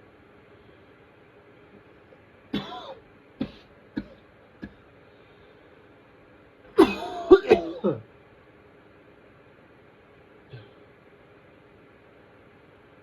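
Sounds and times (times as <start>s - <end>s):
person coughing: 2.6s - 4.8s, 6.8s - 8.0s.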